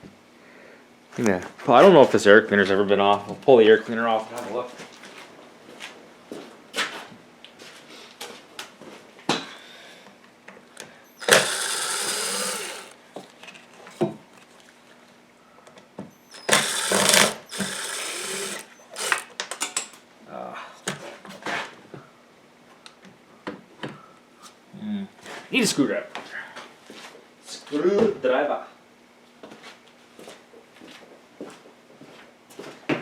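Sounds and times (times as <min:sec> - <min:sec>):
hand tools clicking and knocking: 0:11.2 - 0:12.9, 0:16.3 - 0:19.9
loud noisy bursts: 0:11.2 - 0:13.0, 0:16.3 - 0:19.2.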